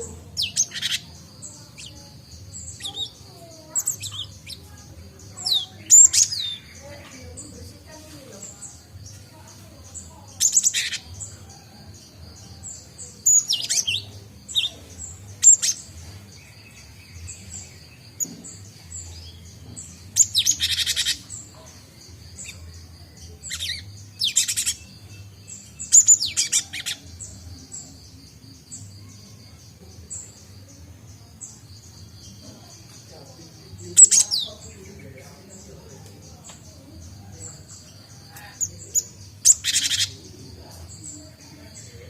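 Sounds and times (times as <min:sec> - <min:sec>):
birds chirping harshly: 0:00.0 - 0:42.0.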